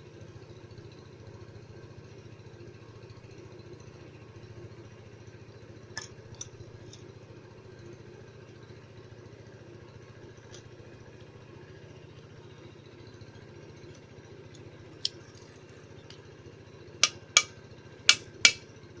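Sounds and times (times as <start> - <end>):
low mechanical hum: 0.0 - 19.0
sharp metallic clicks: 17.0 - 17.5.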